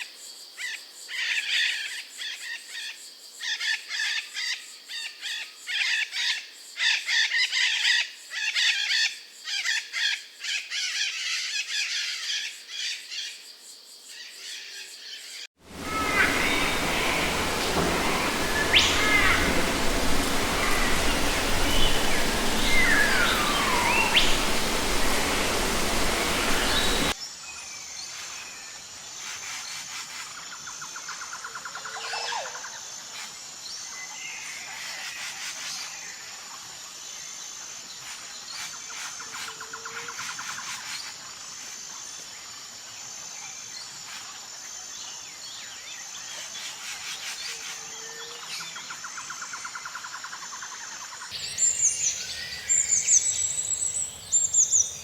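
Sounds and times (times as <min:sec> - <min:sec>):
loud steady hiss: 0:15.6 - 0:27.2, 0:51.3 - 0:55.0
birds calling and whistling: 0:15.7 - 0:27.2, 0:51.3 - 0:55.0.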